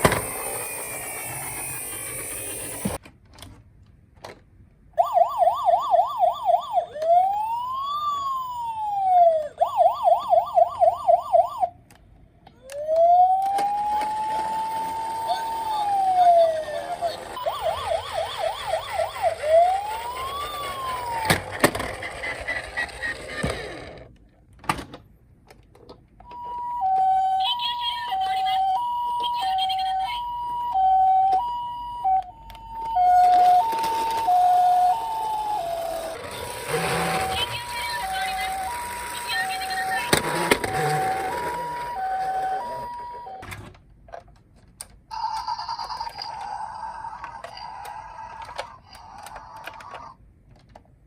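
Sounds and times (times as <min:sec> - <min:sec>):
toy electronic siren wailing: 0:00.0 - 0:03.0, 0:05.0 - 0:11.7, 0:12.5 - 0:23.8, 0:26.3 - 0:43.4, 0:45.1 - 0:50.2
two-tone hi-lo siren: 0:05.0 - 0:11.7, 0:12.7 - 0:21.4, 0:28.5 - 0:43.4
toy clicks: 0:44.8 - 0:50.8.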